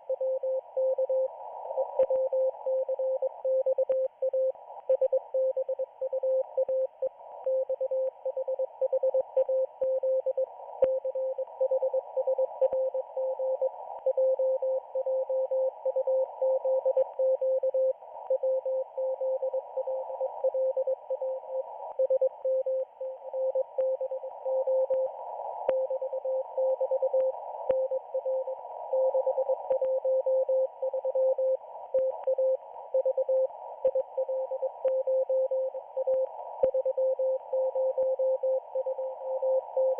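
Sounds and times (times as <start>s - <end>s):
faint static clicks: 0.0s - 39.9s.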